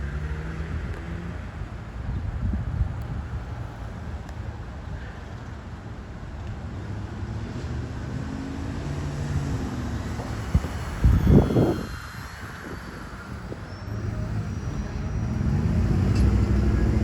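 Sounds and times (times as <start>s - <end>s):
wind rumbling on microphone: 0.0s - 5.2s, 7.9s - 17.0s
low wind buffet: 0.8s - 5.2s, 8.5s - 17.0s.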